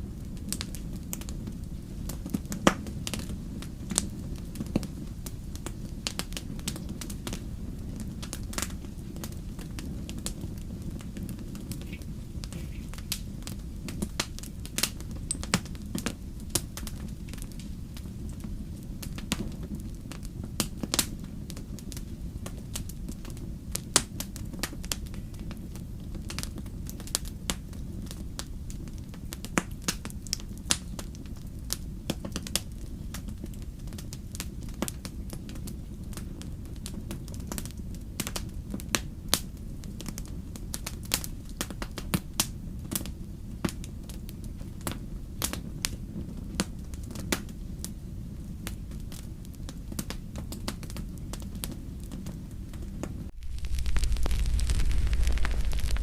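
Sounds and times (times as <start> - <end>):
campfire crackling: 0.0 - 56.0
logs popping and snapping: 53.3 - 56.0.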